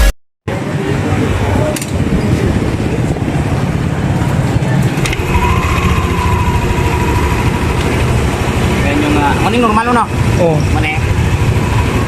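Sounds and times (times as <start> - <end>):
scooter engine idling: 4.5 - 12.0.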